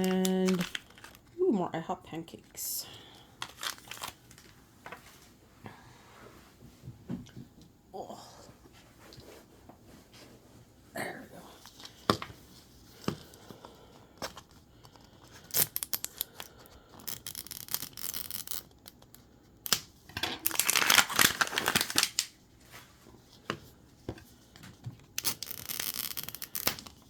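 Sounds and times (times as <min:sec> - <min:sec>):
plastic tearing: 0:00.0 - 0:01.3, 0:03.4 - 0:04.5, 0:17.0 - 0:19.0, 0:19.7 - 0:22.4, 0:25.2 - 0:27.0
plastic packaging crinkling: 0:00.0 - 0:01.4, 0:03.4 - 0:04.6, 0:20.3 - 0:22.4, 0:25.2 - 0:27.0.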